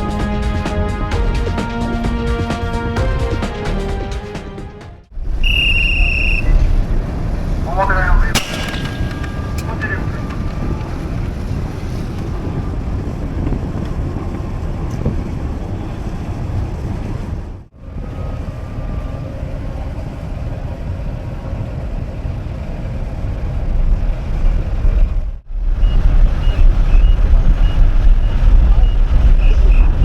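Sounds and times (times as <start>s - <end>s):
low rumble: 5.1s - 20.4s
wind buffeting microphone: 5.1s - 30.0s.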